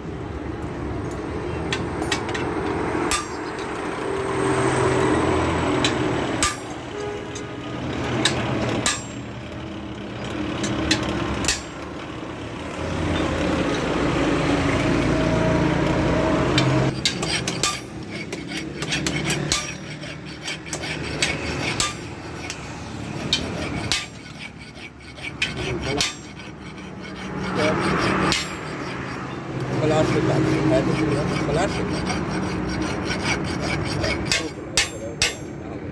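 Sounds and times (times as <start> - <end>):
axe being sharpened: 16.9 - 35.4.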